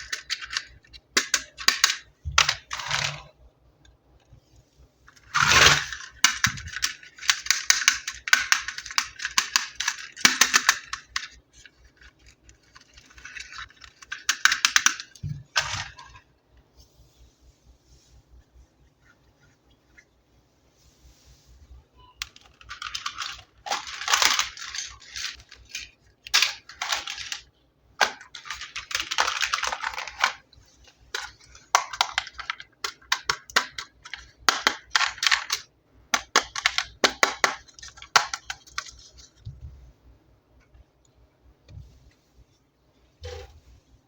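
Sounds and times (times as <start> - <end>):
plastic packaging crinkling: 22.2 - 30.4.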